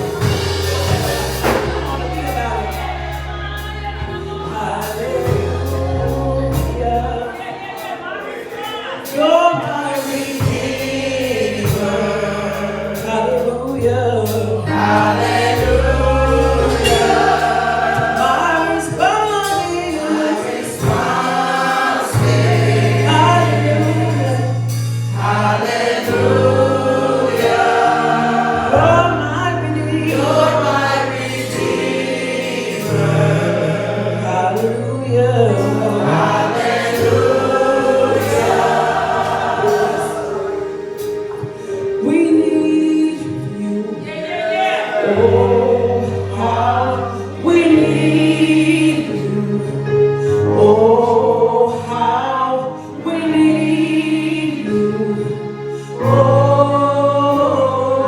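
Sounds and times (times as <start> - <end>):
low bass notes: 0.0 - 7.4, 10.4 - 42.4
live band: 0.0 - 52.1
gospel choir singing: 0.0 - 58.0.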